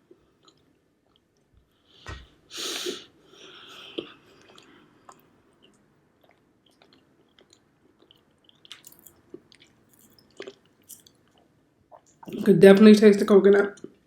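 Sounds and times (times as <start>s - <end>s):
wet mouth clicks chewing: 3.9s - 12.4s.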